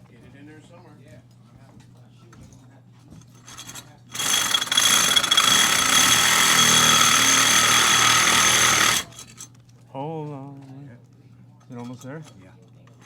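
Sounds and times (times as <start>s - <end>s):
power tool whining: 3.4s - 9.5s.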